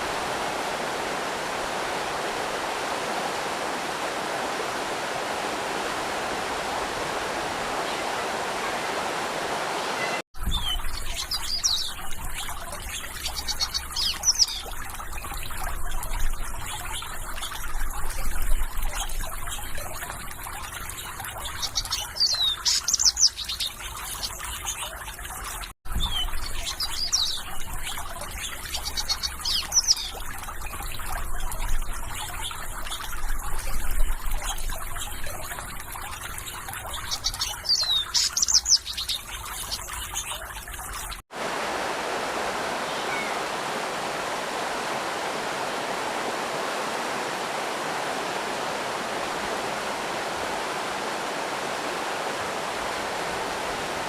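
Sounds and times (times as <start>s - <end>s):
rush of flowing water: 0.0s - 54.0s
trickling water: 0.0s - 54.0s
small birds chirping: 9.8s - 41.2s, 42.8s - 43.6s.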